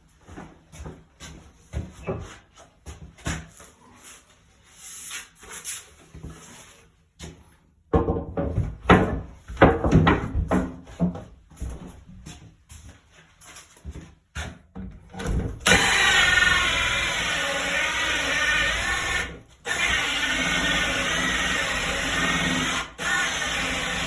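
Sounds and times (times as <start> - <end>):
wood knocking and scraping: 7.9 - 11.8.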